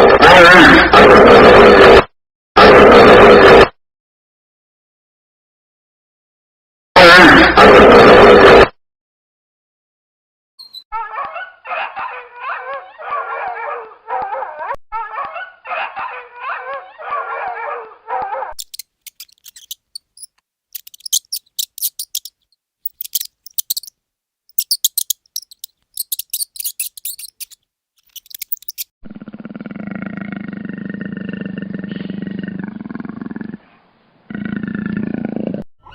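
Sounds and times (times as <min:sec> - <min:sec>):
wavering animal cries: 0:18.6 - 0:22.3, 0:22.9 - 0:23.9, 0:24.5 - 0:28.8
high quick chirps: 0:18.6 - 0:23.9, 0:24.5 - 0:28.9.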